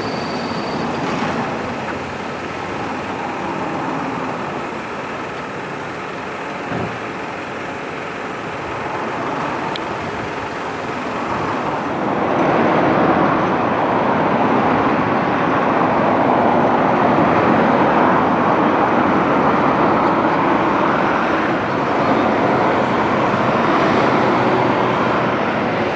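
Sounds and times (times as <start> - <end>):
road traffic rushing: 0.0 - 25.9.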